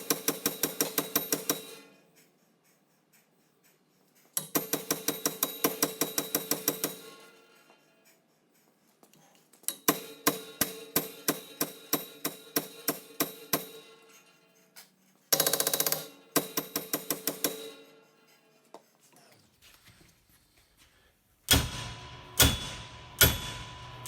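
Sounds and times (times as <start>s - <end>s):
hammer striking metal tool: 0.0s - 2.0s, 4.4s - 7.4s, 9.7s - 14.2s, 15.4s - 18.0s, 21.5s - 24.0s.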